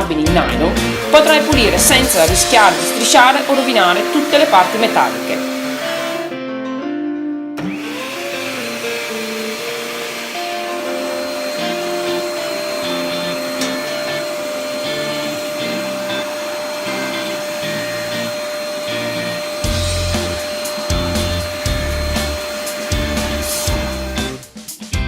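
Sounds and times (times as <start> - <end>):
vacuum motor whine: 0.8 - 6.3, 7.6 - 24.4
background music with bass beat: 23.0 - 25.0.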